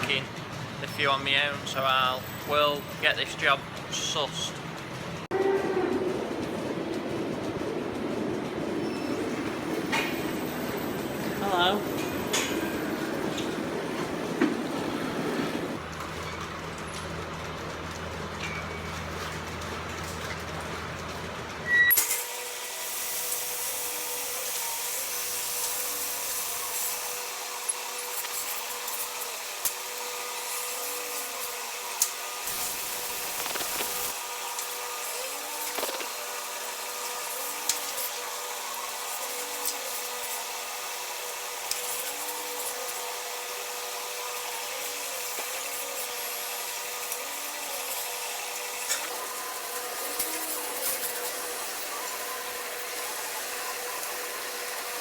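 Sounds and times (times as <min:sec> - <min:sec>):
milking machinery hiss and hum: 0:05.4 - 0:15.9, 0:21.9 - 0:55.0.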